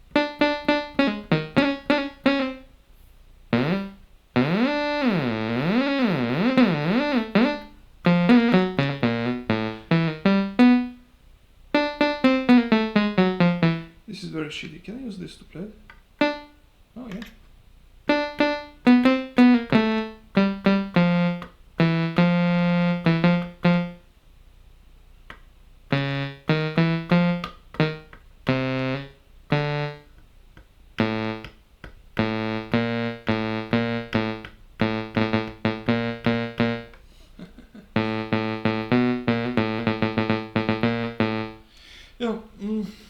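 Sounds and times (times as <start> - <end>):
synthesizer sawtooth notes: 3.5 - 11.0, 11.8 - 13.9, 18.1 - 24.0, 31.0 - 31.6, 32.2 - 37.0, 38.0 - 41.6.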